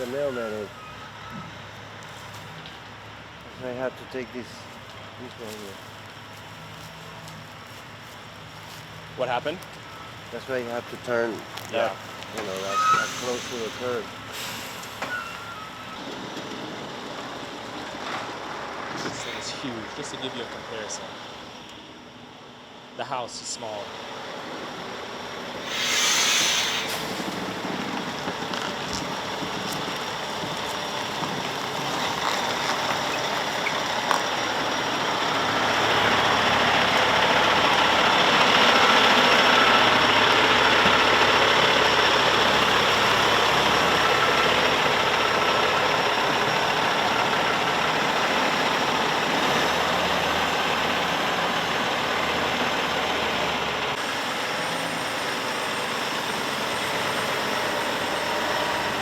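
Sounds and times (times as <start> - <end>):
heavy diesel engine running: 0.0 - 59.0
short hiss: 12.4 - 15.0, 25.6 - 27.4.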